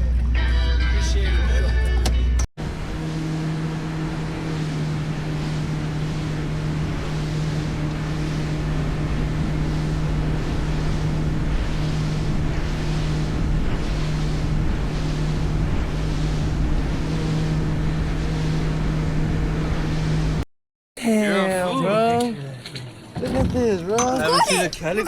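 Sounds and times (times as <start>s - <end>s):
boat engine humming: 0.0s - 20.4s
water rushing past hull: 2.6s - 20.4s
wind buffeting microphone: 4.0s - 20.4s.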